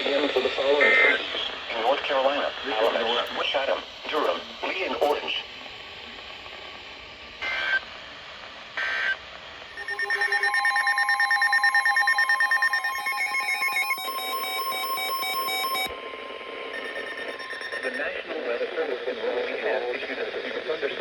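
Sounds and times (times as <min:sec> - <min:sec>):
pulsing electronic alert tone: 0:09.8 - 0:18.2
digital data screech: 0:09.8 - 0:18.8.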